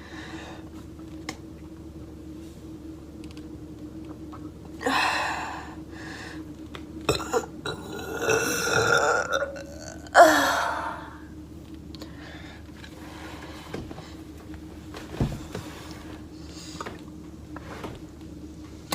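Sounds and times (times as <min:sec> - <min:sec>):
woman burping: 0:07.1 - 0:11.1.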